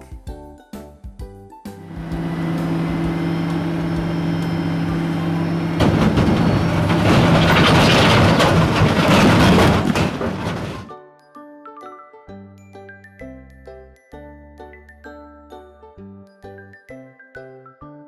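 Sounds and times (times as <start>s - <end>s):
diesel truck engine running: 1.8s - 10.9s.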